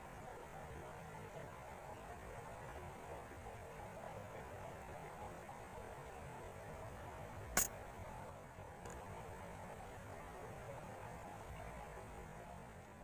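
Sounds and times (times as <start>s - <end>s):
background hiss and hum: 0.0s - 13.0s.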